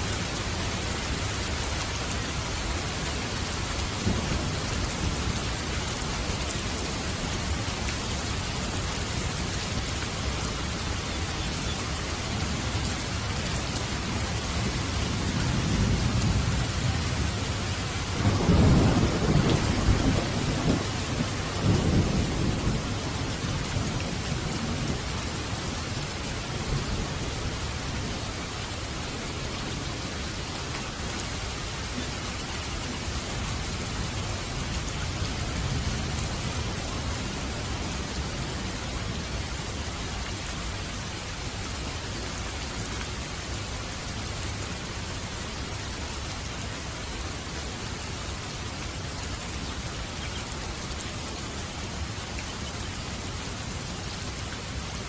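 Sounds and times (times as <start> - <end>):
steady rain falling: 0.0 - 55.0
thunder rumbling: 14.5 - 25.8.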